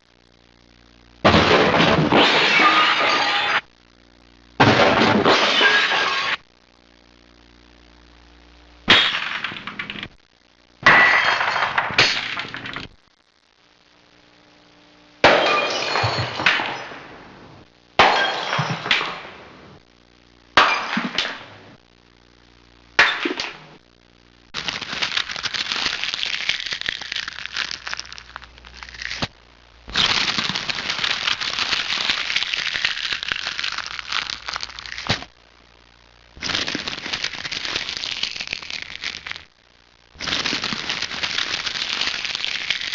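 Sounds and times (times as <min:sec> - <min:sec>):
dense steady crackling: 0:00.0 - 0:01.3, 0:03.7 - 0:04.6, 0:06.4 - 0:10.9, 0:12.1 - 0:15.3, 0:21.7 - 0:23.0, 0:23.7 - 0:42.9
glass breaking: 0:01.3 - 0:03.7, 0:04.6 - 0:06.4, 0:10.8 - 0:12.9, 0:15.2 - 0:17.1, 0:18.0 - 0:19.3, 0:20.6 - 0:21.4.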